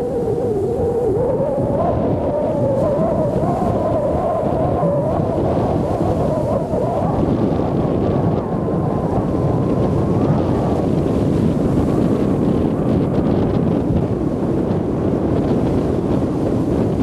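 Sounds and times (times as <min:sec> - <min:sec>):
surf breaking on beach: 0:00.0 - 0:17.0
wind buffeting microphone: 0:00.0 - 0:17.0.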